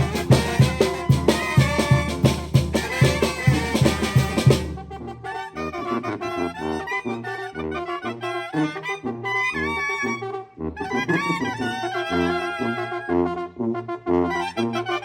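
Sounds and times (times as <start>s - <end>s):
drums and cymbals beat: 0.0s - 4.8s
brass band playing: 0.0s - 15.0s.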